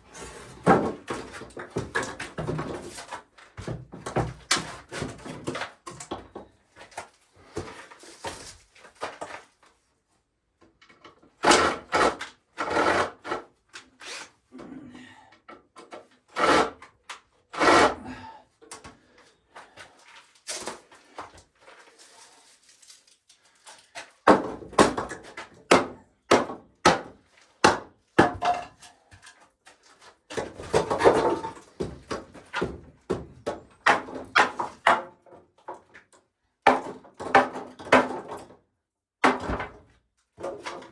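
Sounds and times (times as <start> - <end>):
wood pieces clattering: 30.4 - 32.7.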